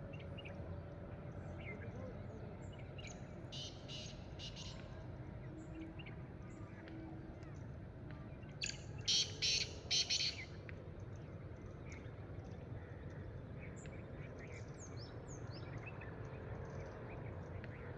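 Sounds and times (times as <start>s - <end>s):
bird calling harsh rasping notes: 9.1s - 10.4s.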